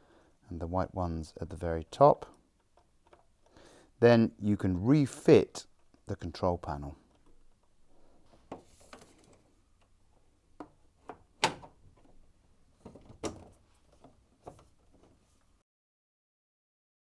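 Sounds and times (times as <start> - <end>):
dryer control panel knocks and clicks: 10.6 - 11.8.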